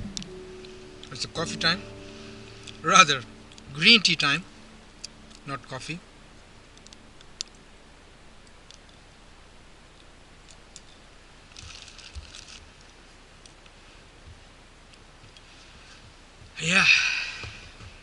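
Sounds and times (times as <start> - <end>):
rustle: 0.0 - 18.0
small ticks: 6.8 - 7.6, 9.9 - 16.6.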